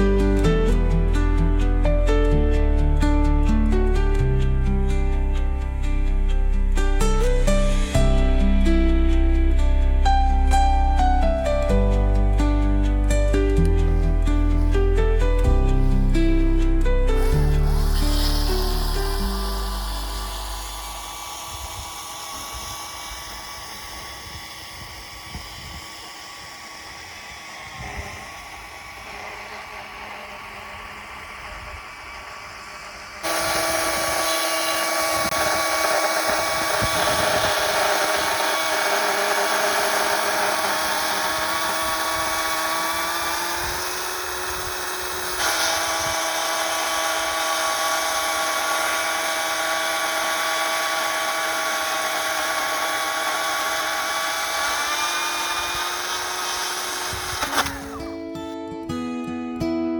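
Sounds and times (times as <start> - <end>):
power tool motor whining: 7.3 - 8.3, 13.5 - 58.3.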